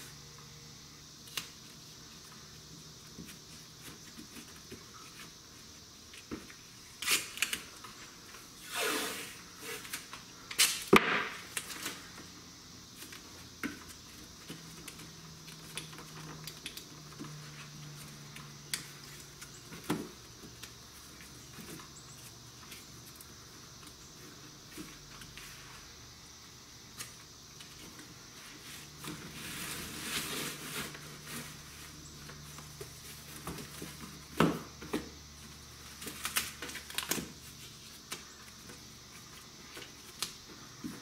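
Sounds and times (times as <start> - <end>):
tape ripping off roll: 7.0 - 7.8, 8.6 - 12.0, 35.9 - 37.5.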